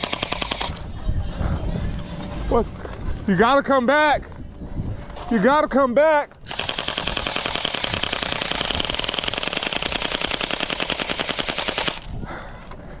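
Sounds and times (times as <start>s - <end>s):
airsoft gun firing full auto: 0.0s - 0.8s, 6.5s - 12.1s.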